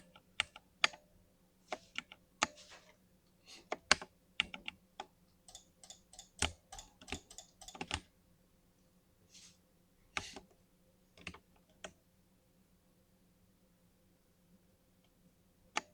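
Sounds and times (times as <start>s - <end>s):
typing on mechanical keyboard: 5.5s - 8.0s.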